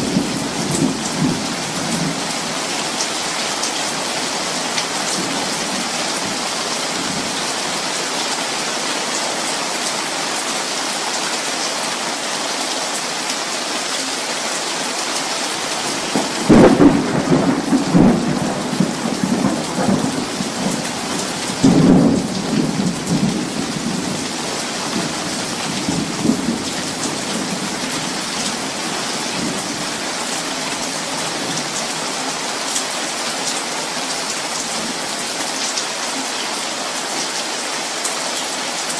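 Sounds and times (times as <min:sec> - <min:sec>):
heavy rain: 0:00.0 - 0:38.9
thunder rumbling: 0:15.9 - 0:30.0.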